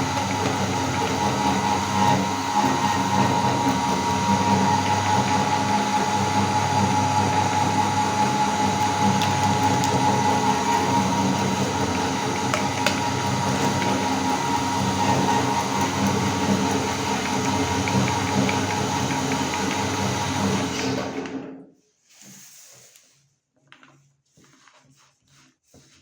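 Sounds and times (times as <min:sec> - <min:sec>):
meat grinder motor whine: 0:00.0 - 0:21.6.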